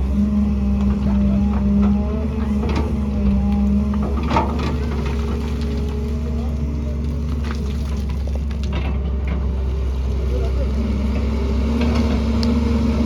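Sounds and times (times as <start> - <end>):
diesel engine rumbling: 0.0 - 13.0.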